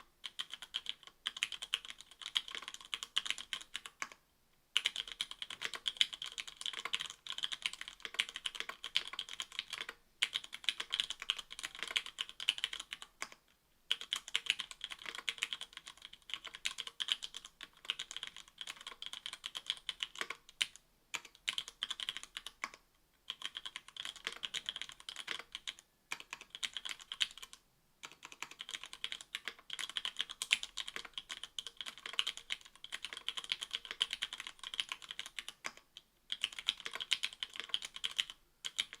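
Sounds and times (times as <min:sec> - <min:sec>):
typing on mechanical keyboard: 0:00.2 - 0:04.2, 0:04.8 - 0:39.0.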